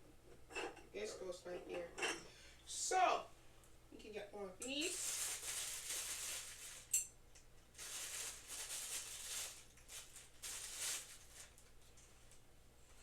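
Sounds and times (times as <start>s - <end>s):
rustling and scraping: 0.2s - 2.3s, 4.8s - 7.0s, 7.7s - 13.0s.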